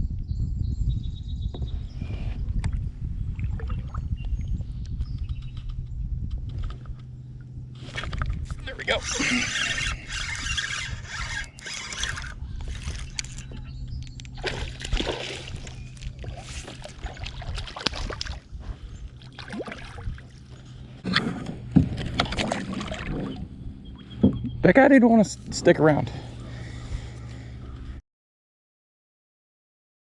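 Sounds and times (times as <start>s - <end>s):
steady low hum: 0.1s - 28.0s
water splashing and sloshing: 2.7s - 4.1s, 7.8s - 24.5s.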